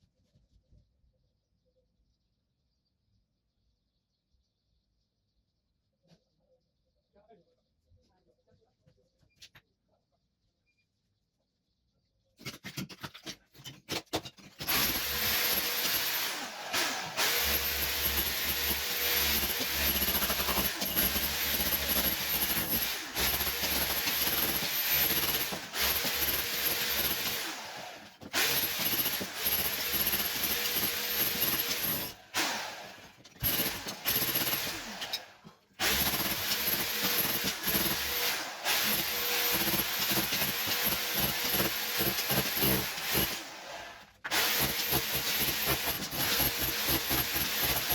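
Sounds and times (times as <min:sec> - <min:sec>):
demolition hammer chipping tiles: 0:12.4 - 0:47.9.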